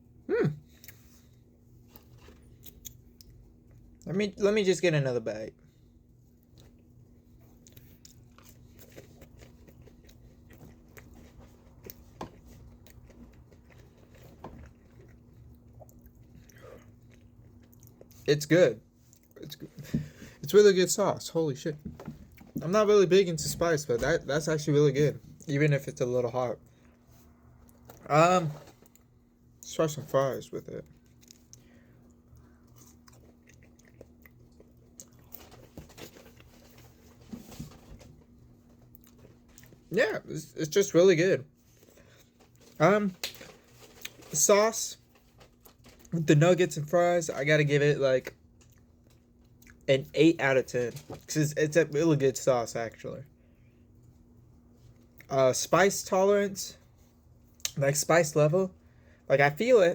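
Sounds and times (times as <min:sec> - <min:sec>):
faint steady hum: 0:00.0 - 0:59.9
person chewing food: 0:06.4 - 0:18.3, 0:26.8 - 0:28.1, 0:30.9 - 0:37.2.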